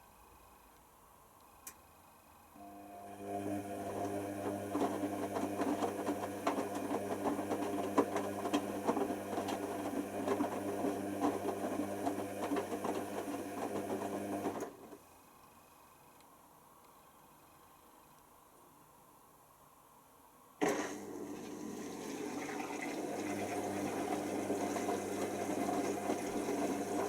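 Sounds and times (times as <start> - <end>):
washer dryer motor hum: 2.6 - 15.0, 20.6 - 27.0.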